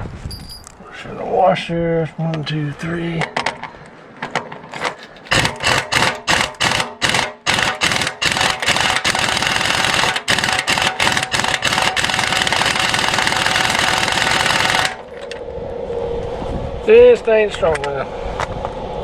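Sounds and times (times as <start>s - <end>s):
impact wrench hammering: 4.8s - 15.0s.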